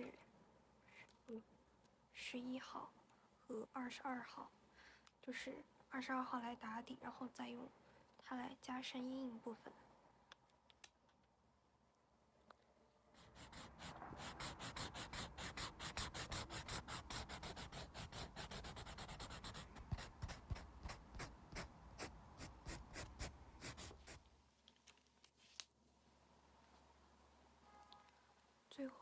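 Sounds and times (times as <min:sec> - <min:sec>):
marker scratching strokes: 0:13.2 - 0:24.2.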